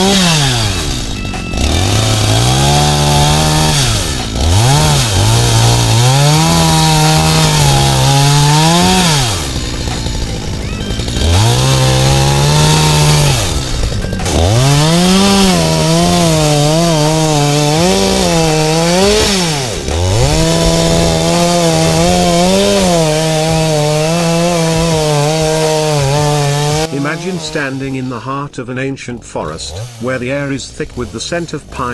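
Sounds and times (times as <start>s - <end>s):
chainsaw engine revving: 0.0s - 28.6s, 29.2s - 31.9s.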